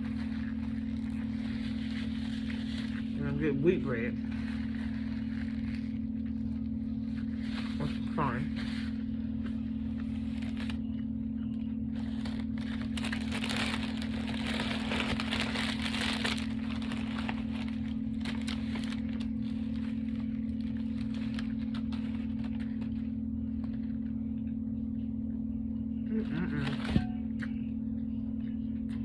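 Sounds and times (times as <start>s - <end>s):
steady low hum: 0.0s - 29.0s
food wrapper crinkling: 4.3s - 6.5s, 9.9s - 11.0s, 11.9s - 24.1s.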